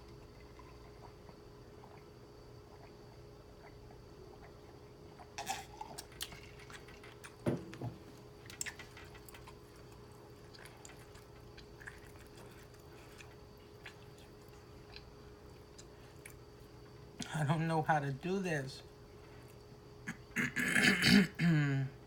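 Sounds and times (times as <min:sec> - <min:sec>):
wet chewing and mouth noises: 0:02.7 - 0:07.4, 0:08.4 - 0:16.7.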